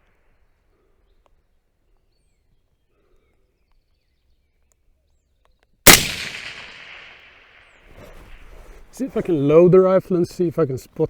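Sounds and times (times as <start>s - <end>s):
suppressed rifle shot with echo: 5.8s - 8.9s.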